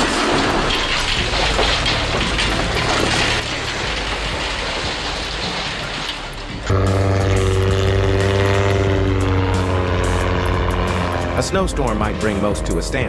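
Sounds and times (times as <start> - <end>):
heavy machinery rumble and clatter: 0.0 - 13.0
steady engine drone: 6.6 - 13.0.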